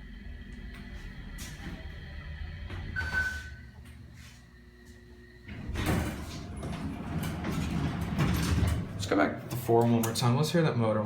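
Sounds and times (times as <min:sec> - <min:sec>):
elevator humming and whining: 0:00.0 - 0:11.0
elevator doors sliding open: 0:00.9 - 0:04.1, 0:05.4 - 0:10.4.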